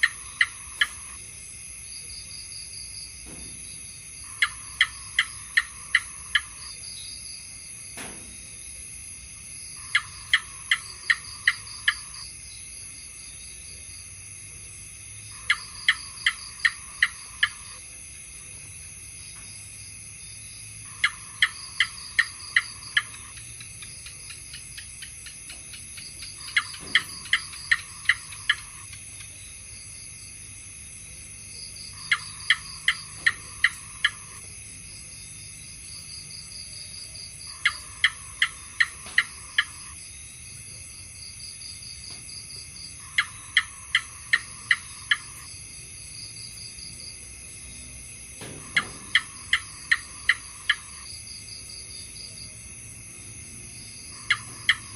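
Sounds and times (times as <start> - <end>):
gecko chirping: 0.0 - 1.2, 4.2 - 6.8, 9.8 - 12.3, 15.3 - 17.8, 20.9 - 29.4, 31.7 - 34.5, 37.3 - 40.0, 43.0 - 45.5, 48.6 - 51.1, 54.0 - 54.9
steady high-pitched hiss: 0.0 - 54.9.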